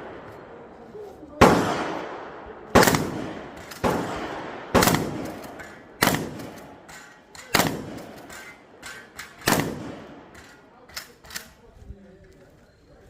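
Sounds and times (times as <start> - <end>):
shotgun blasts with echo: 1.4 - 10.4.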